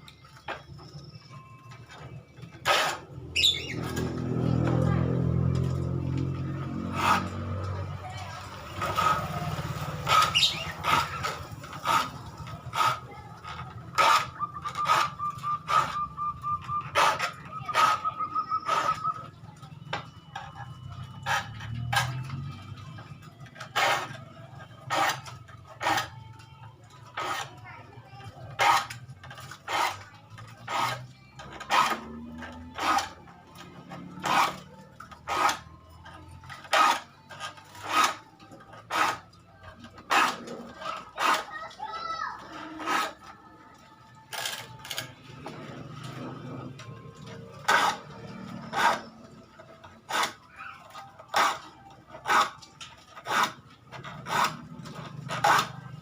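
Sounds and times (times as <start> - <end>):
hand file rasping on saw teeth: 6.8 - 7.6, 53.2 - 56.0.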